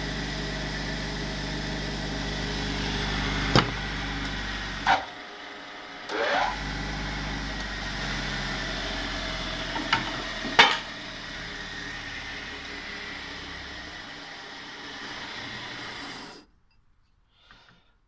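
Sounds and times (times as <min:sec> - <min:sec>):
motor running with spinning drum: 0:00.0 - 0:16.5
wood sanding bursts: 0:06.1 - 0:16.5.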